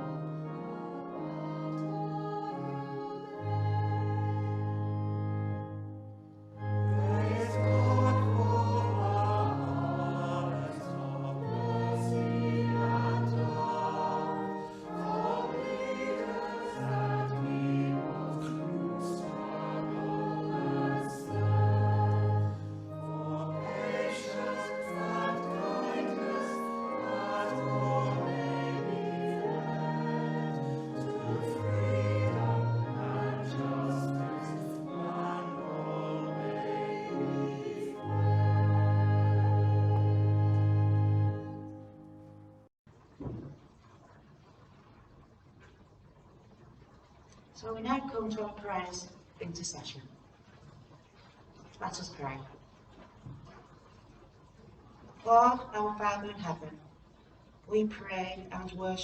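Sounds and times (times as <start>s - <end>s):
choir singing a hymn: 0.0s - 5.7s, 6.6s - 41.9s
instrumental accompaniment: 0.0s - 42.7s.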